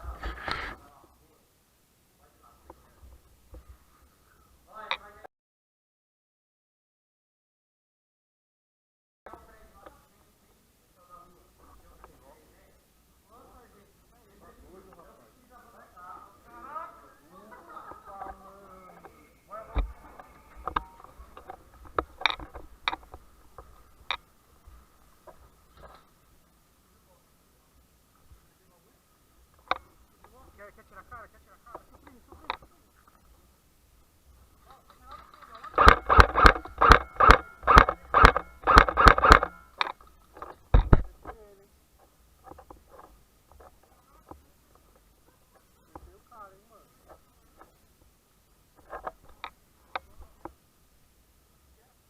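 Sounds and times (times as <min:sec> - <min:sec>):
faint steady hum: 0:00.0 - 0:05.3, 0:09.3 - 0:52.0
sharp clicks and knocks: 0:20.6 - 0:24.2, 0:34.7 - 0:41.4
airsoft rifle shots: 0:35.6 - 0:39.9.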